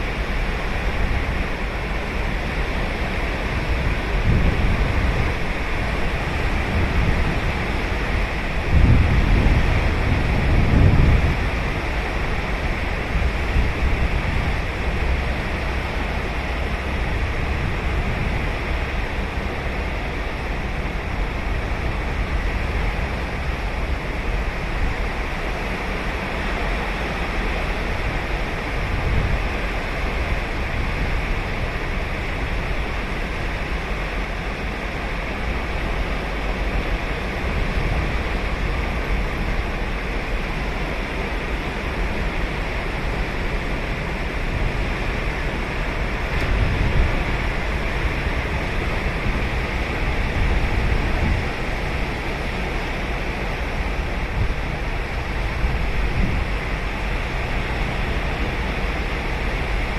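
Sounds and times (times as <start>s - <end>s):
ocean waves breaking on beach: 0.0s - 59.9s.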